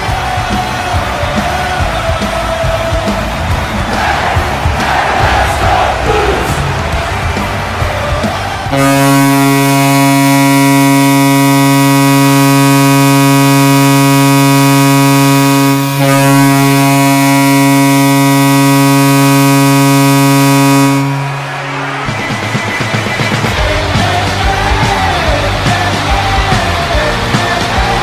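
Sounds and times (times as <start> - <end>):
arena goal horn blast: 8.7 - 22.5.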